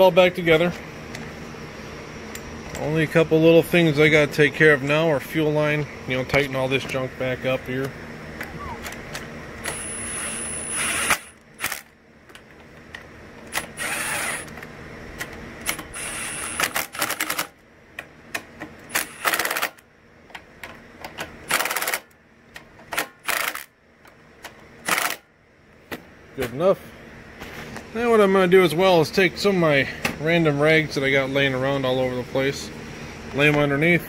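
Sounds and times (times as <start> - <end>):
ratchet rapid clicking: 9.7 - 11.8.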